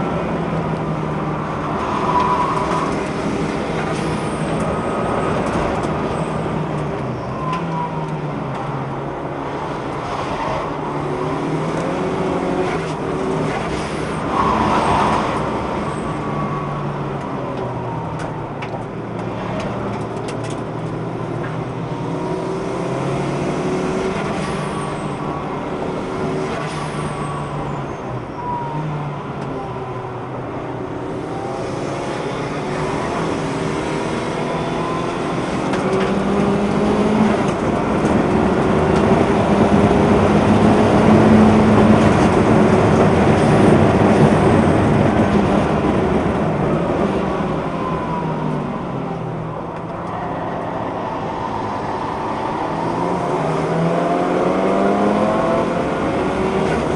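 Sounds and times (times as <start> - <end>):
road noise: 0.0 - 56.9
race car engine revving: 31.2 - 56.9.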